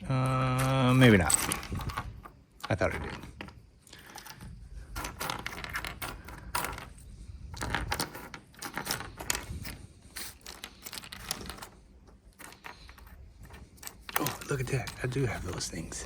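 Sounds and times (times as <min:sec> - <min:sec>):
small parts clattering in a box: 0:00.4 - 0:16.0.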